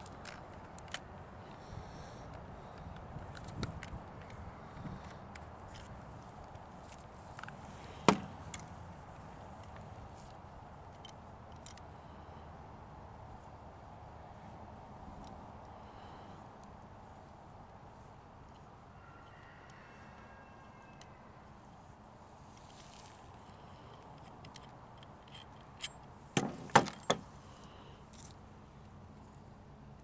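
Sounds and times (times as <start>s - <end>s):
metal parts clicking: 24.0s - 27.3s.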